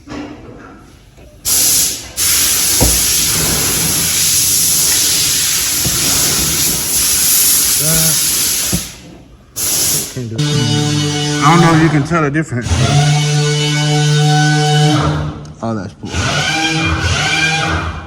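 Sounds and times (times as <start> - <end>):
loud steady hiss: 1.5 - 10.4
single knock: 2.8 - 3.1.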